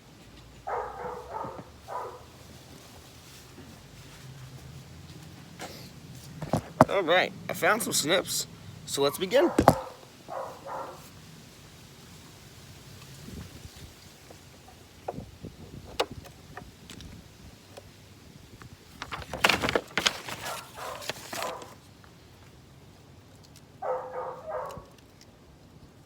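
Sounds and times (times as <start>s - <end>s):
dog barking: 0.6s - 2.4s, 9.4s - 11.1s, 20.4s - 21.8s, 23.8s - 24.9s.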